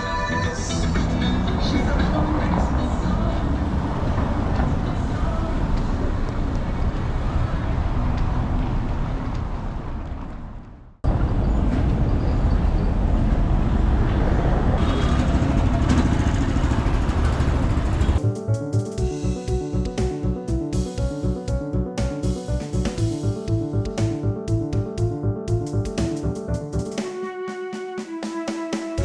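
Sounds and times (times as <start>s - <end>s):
city street traffic rumble: 0.4s - 21.6s.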